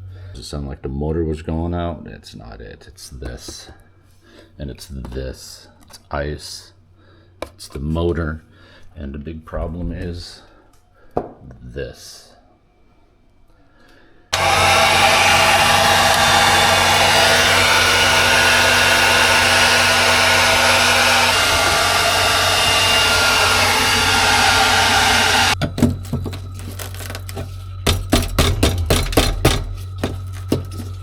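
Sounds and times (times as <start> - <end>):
hot-air blower running: 14.3 - 25.6.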